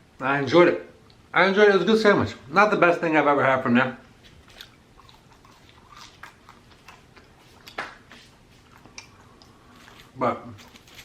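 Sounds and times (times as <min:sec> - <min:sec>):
person chewing food: 0:04.1 - 0:11.0.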